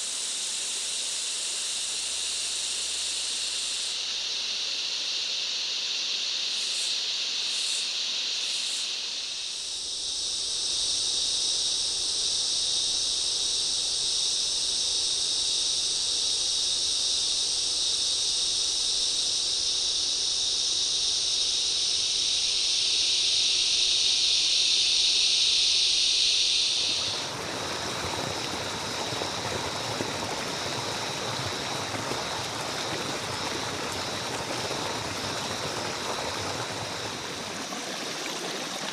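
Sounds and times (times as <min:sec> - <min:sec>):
high-pitched insect drone: 0:16.6 - 0:26.8
stream rushing: 0:26.8 - 0:38.9.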